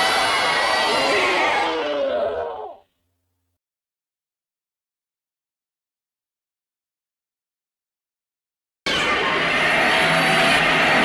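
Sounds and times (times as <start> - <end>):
creature squealing cry: 0.0 - 2.9.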